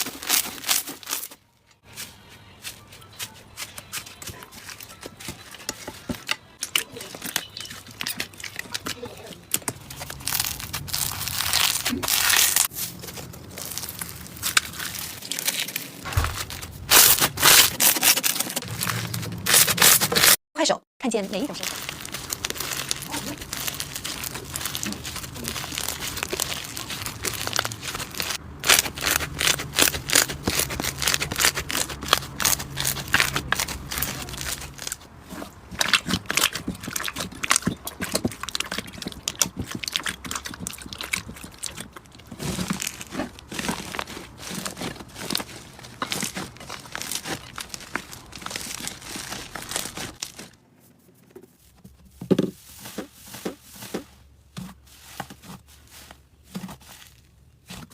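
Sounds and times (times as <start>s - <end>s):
slime squeezed crackling: 6.6s - 20.0s, 21.4s - 50.5s.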